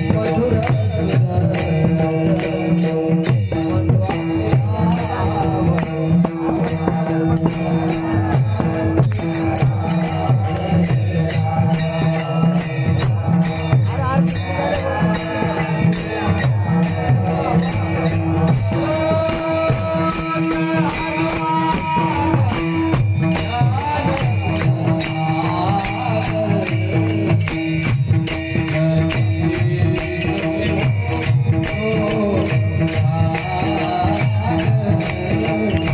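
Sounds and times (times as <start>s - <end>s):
drum beat: 0.0s - 35.9s
jingling metal percussion: 0.0s - 35.9s.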